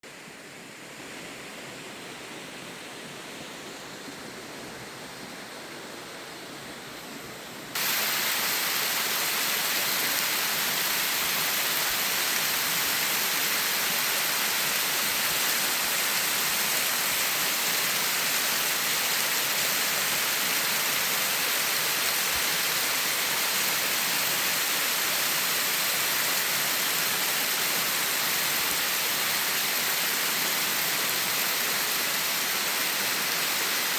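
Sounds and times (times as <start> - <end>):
waterfall rushing: 7.8 - 33.9.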